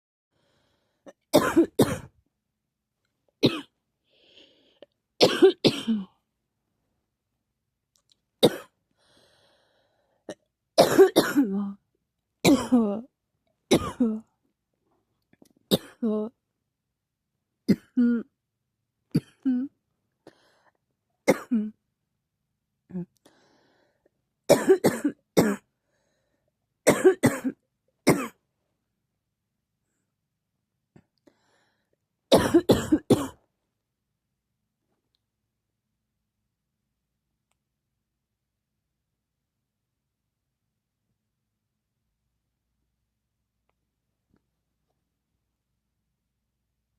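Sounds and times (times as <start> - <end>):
faint breath in: 0.3 - 1.1, 4.0 - 4.9, 8.9 - 10.3, 23.2 - 24.1, 25.8 - 26.5, 31.2 - 32.0
person coughing: 1.1 - 2.1, 3.4 - 3.7, 5.2 - 6.2, 8.4 - 8.8, 10.8 - 11.6, 12.5 - 13.0, 13.7 - 14.2, 15.7 - 16.2, 17.7 - 18.3, 19.1 - 19.7, 21.3 - 21.8, 24.5 - 25.7, 26.9 - 28.4, 32.3 - 33.5.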